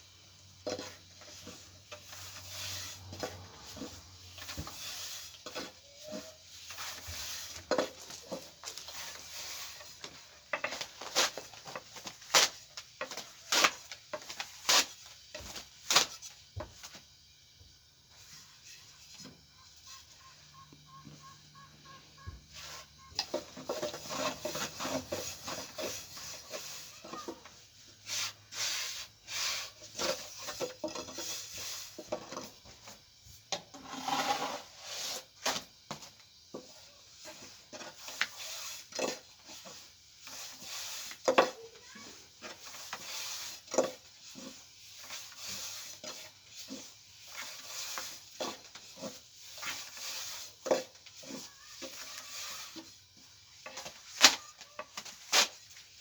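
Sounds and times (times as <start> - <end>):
scraping and rubbing: 0.7 - 15.0, 21.2 - 32.6, 33.8 - 35.3.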